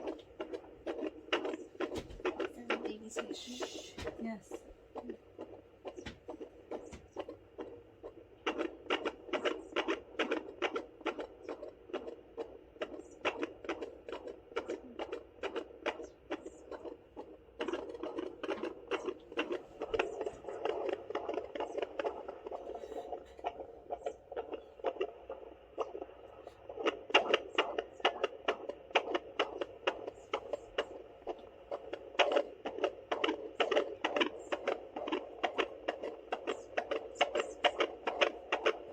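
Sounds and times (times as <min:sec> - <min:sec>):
fetal heartbeat whooshing pulses: 0:00.0 - 0:38.9
low hum: 0:00.0 - 0:38.9.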